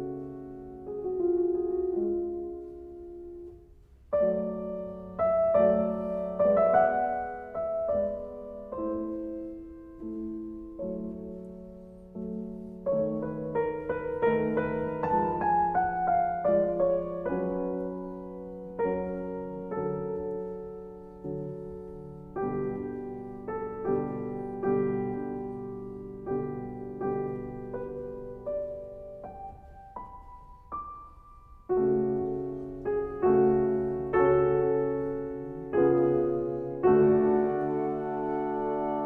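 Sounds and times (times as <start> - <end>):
slow gentle piano music: 0.0 - 39.0.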